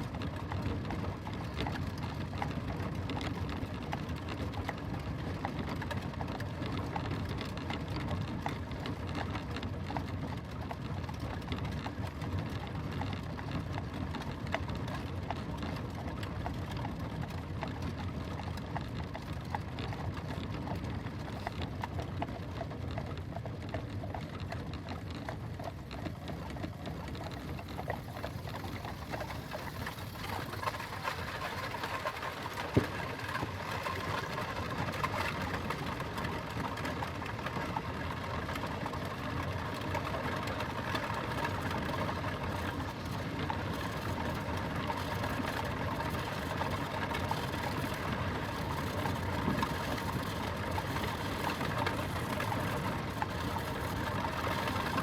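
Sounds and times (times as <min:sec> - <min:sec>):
carriage wheels rattling: 0:24.1 - 0:37.0.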